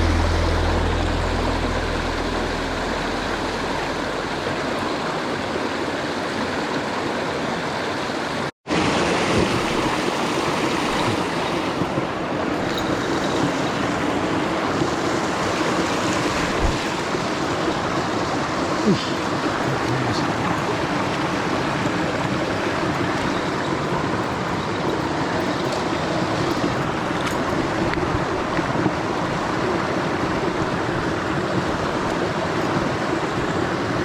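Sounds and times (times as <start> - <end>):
mountain stream rushing: 0.0 - 34.0.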